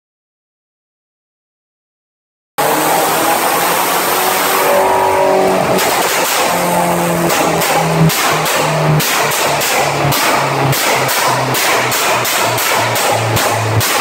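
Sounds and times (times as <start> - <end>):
car engine revving: 2.6 - 14.0
exhaust popping and crackling: 3.3 - 14.0.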